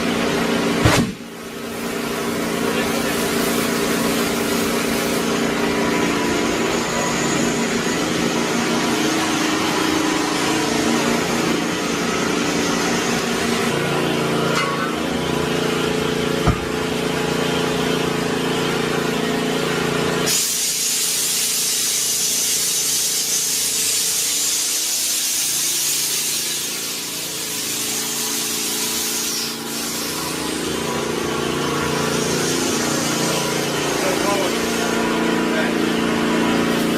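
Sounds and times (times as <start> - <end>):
engine hum: 0.0 - 20.3
compressed air hissing: 2.8 - 13.7, 20.2 - 31.2, 31.8 - 35.2
sharp knock: 16.4 - 16.8.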